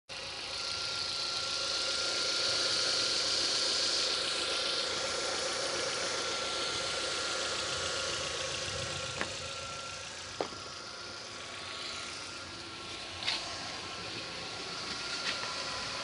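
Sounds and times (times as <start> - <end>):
engine idling: 0.1 - 16.0
hydraulic pump hissing and whining: 0.2 - 16.0.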